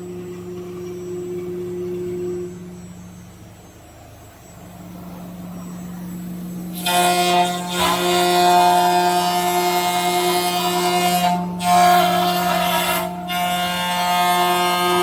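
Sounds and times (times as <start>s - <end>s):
router spindle humming: 0.0s - 15.0s
router bit cutting with whine: 6.7s - 15.0s.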